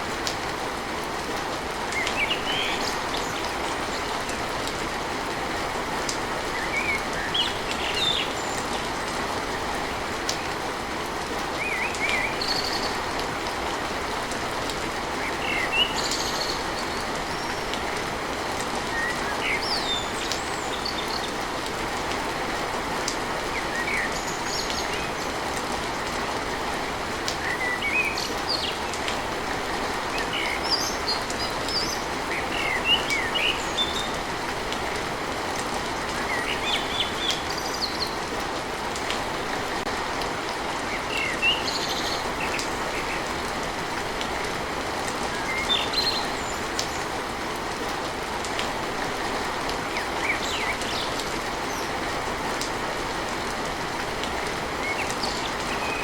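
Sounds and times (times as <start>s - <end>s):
rain on a tin roof: 0.0s - 56.0s
birds chirping: 35.8s - 38.4s, 40.7s - 43.5s.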